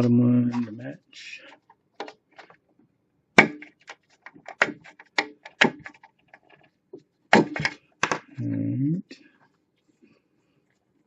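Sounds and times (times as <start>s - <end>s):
plastic switch clicks and knocks: 3.4s - 6.1s.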